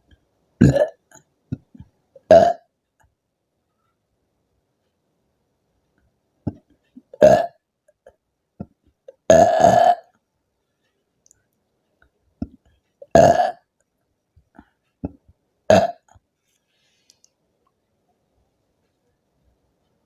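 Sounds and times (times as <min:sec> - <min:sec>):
woman burping: 0:00.6 - 0:01.2, 0:02.2 - 0:02.7, 0:07.1 - 0:07.6, 0:09.1 - 0:10.1, 0:13.0 - 0:13.6, 0:15.7 - 0:16.1.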